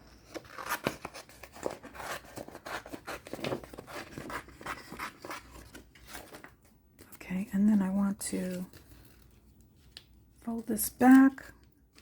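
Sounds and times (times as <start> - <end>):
paper rustling: 0.0 - 6.7.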